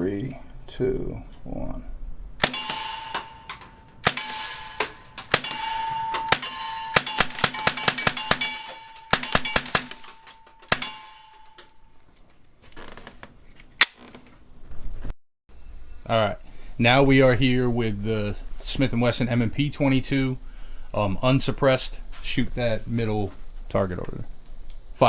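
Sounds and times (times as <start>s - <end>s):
suppressed rifle shots: 2.4s - 11.5s
bullets clanging on steel plates: 2.4s - 11.9s.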